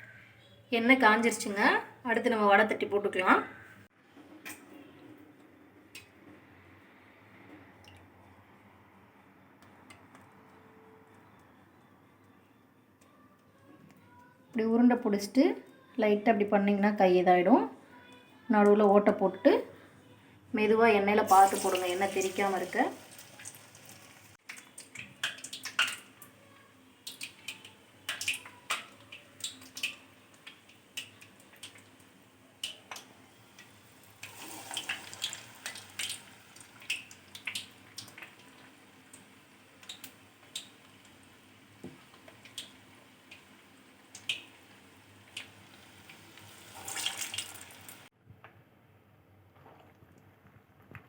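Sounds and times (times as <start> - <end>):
food frying in hot oil: 21.3 - 48.1.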